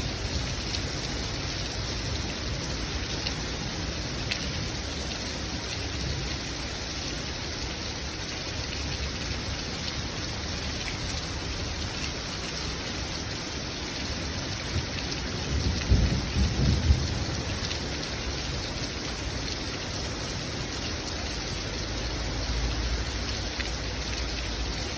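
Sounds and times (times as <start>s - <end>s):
heavy rain falling: 0.0s - 24.9s
low rumble of thunder: 14.7s - 18.6s.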